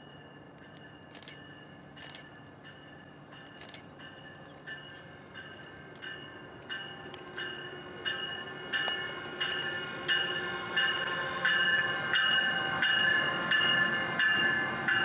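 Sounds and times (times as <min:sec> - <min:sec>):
train bell ringing: 0:00.0 - 0:15.0.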